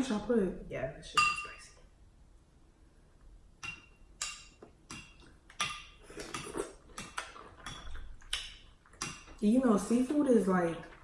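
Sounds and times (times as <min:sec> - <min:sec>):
dishes and utensils clattering: 0:03.6 - 0:09.4.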